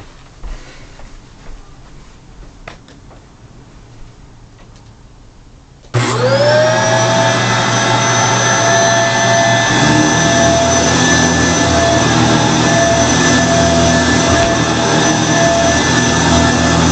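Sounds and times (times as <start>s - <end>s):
vacuum cleaner motor whining: 5.9s - 16.9s.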